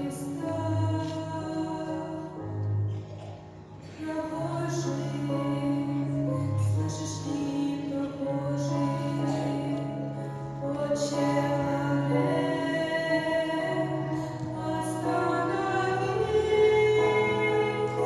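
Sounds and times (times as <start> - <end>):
voices singing sustained notes: 4.0 - 18.0.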